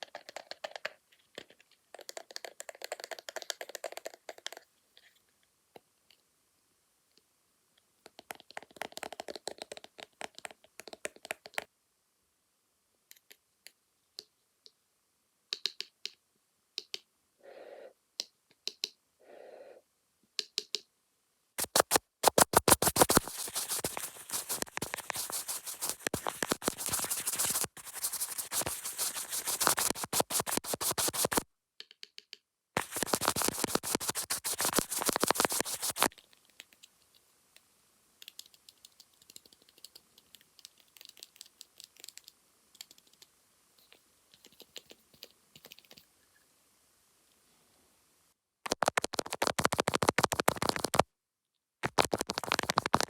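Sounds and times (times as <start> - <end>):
rapid scratching: 21.6 - 31.4, 32.8 - 36.2, 48.6 - 51.0, 51.8 - 53.0
soft brushing: 21.6 - 31.4, 32.8 - 36.1, 51.9 - 53.0.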